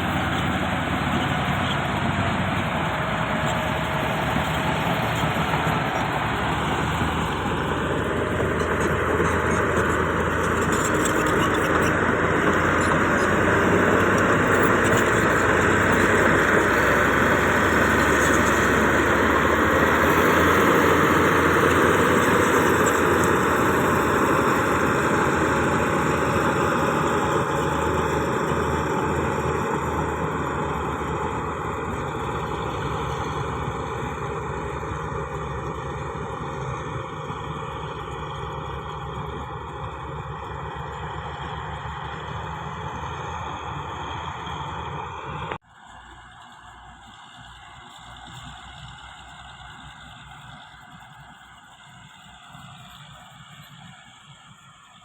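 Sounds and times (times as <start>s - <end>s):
bulldozer diesel engine: 0.0s - 55.0s.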